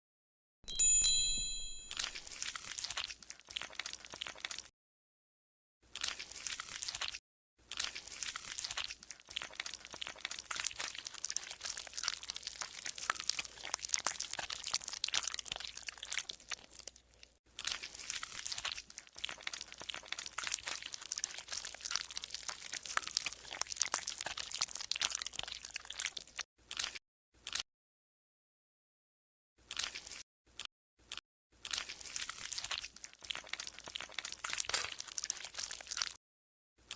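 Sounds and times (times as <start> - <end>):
slime squelching and crackling: 6.0 - 17.0, 17.6 - 26.2.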